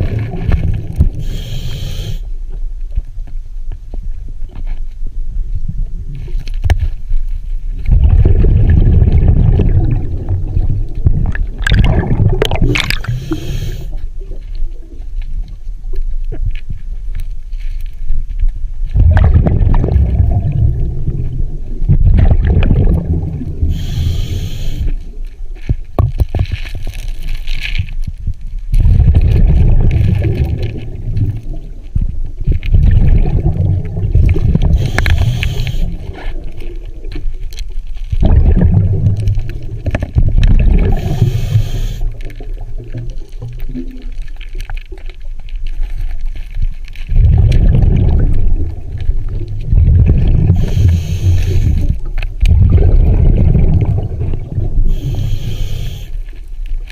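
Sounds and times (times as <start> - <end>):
exhaled air bubbling: 0.0 - 2.3, 7.6 - 16.8, 18.8 - 56.9
regulator inhale hiss: 1.2 - 2.4, 13.0 - 14.0, 23.6 - 25.0, 34.6 - 36.2, 40.9 - 42.2, 50.6 - 52.0, 54.9 - 56.4.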